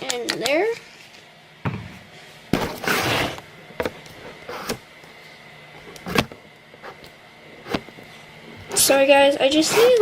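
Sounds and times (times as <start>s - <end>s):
rustling scrape: 2.7s - 3.4s.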